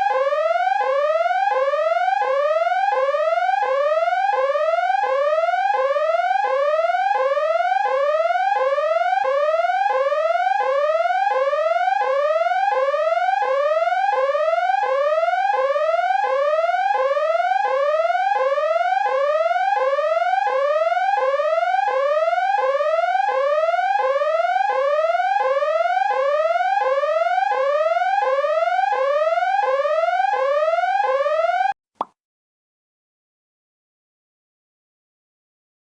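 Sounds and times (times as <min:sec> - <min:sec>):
whooping electronic alarm: 0:00.0 - 0:31.8.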